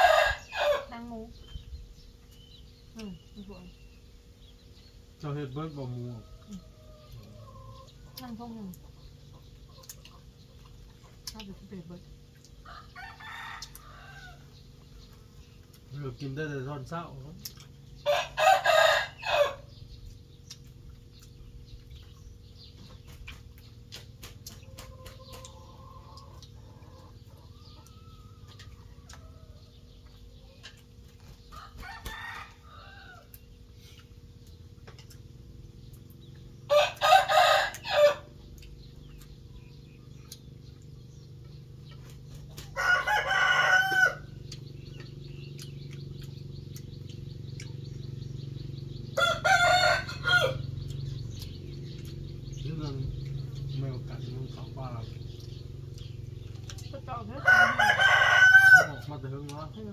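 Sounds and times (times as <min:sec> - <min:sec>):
roosters crowing: 0:00.0 - 0:01.1, 0:12.6 - 0:15.4, 0:17.8 - 0:20.3, 0:24.6 - 0:33.7, 0:35.8 - 0:59.8
low background hum: 0:00.0 - 0:59.9.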